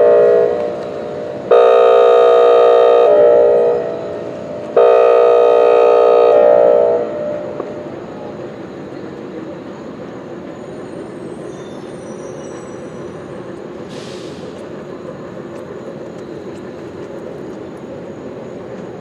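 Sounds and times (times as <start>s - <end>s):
machine rumble: 0.0s - 8.6s
short hiss: 13.9s - 14.7s.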